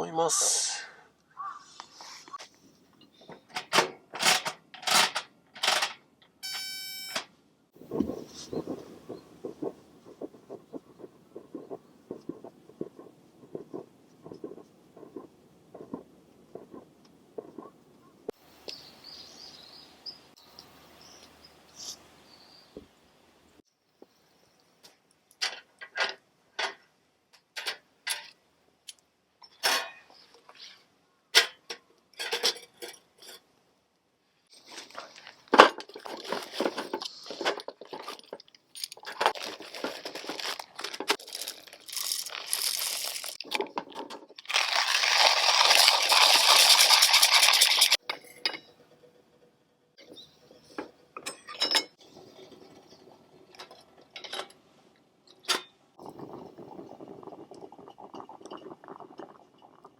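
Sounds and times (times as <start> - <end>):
cookware clinking and clattering: 32.2 - 33.4, 50.7 - 53.0.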